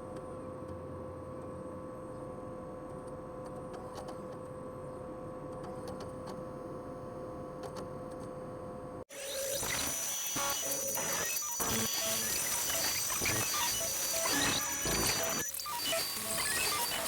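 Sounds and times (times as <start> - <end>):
computer whir and hum: 5.6 - 17.0.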